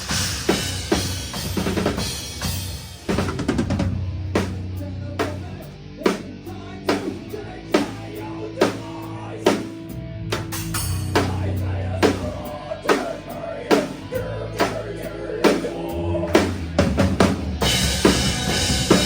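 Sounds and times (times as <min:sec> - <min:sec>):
heavy drum hits: 0:00.0 - 0:04.6, 0:16.4 - 0:19.0
fast busy drumming: 0:00.0 - 0:06.3, 0:07.8 - 0:19.0
distorted guitar and bass: 0:00.0 - 0:19.0.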